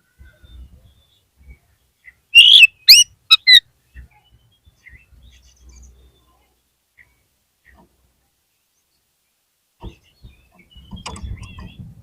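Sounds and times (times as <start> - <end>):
bird whistled song: 2.3 - 5.1.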